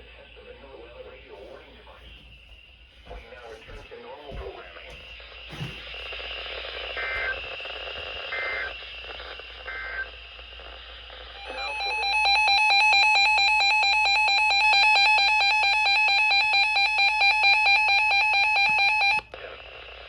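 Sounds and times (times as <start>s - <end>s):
faint radio hiss: 0.0s - 12.2s, 18.8s - 20.0s
rapid electronic alarm beeping: 11.4s - 19.3s.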